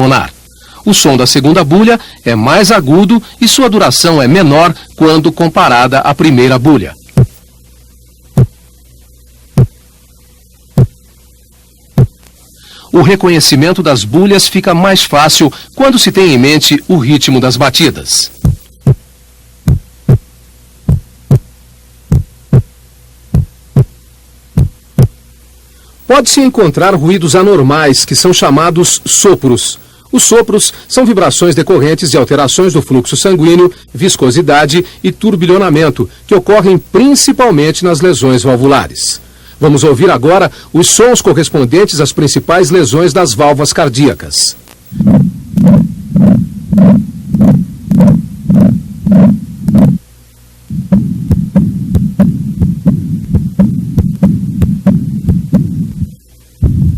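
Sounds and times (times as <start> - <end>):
faint steady hum: 0.0 - 56.9
heartbeat lub-dub: 7.2 - 7.5, 8.3 - 8.8, 9.5 - 11.2, 11.9 - 12.3, 17.9 - 25.3, 44.8 - 56.9.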